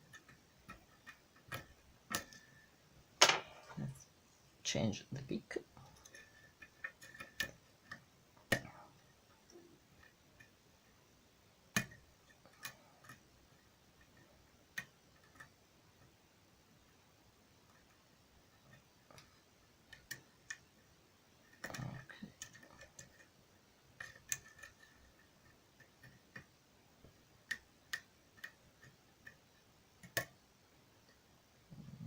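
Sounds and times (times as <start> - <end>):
lock pick clicking and scraping: 6.0 - 8.7, 24.0 - 26.5.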